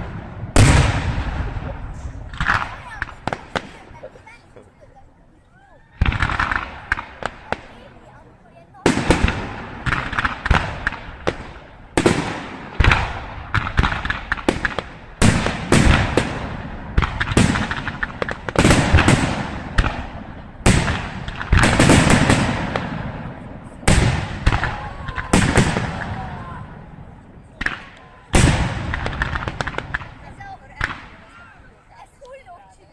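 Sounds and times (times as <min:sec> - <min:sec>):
echoing rumble and crackle: 0:00.0 - 0:03.8
fireworks bangs: 0:00.0 - 0:04.5, 0:05.9 - 0:31.8.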